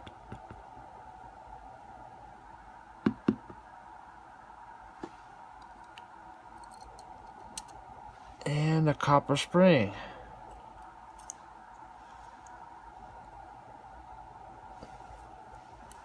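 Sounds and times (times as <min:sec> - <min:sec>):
faint steady hum: 0:00.0 - 0:16.0
tweezers clicking on lock pins: 0:06.6 - 0:07.8.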